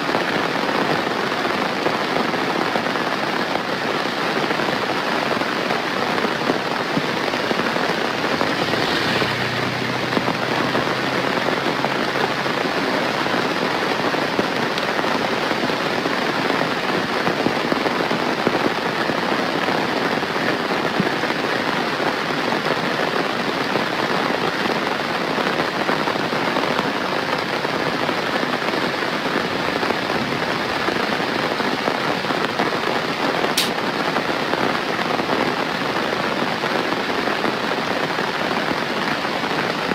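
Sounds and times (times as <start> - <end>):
heavy rain pattering: 0.0 - 39.9
sharp click: 33.6 - 33.8.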